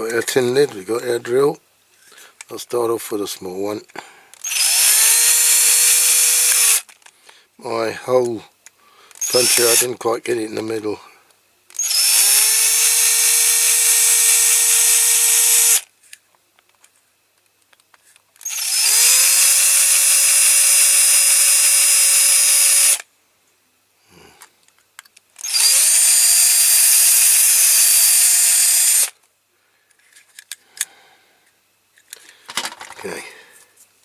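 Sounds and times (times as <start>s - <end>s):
small electric drill whining: 4.4s - 7.0s, 9.1s - 9.8s, 11.7s - 15.9s, 18.4s - 23.1s, 25.4s - 29.2s.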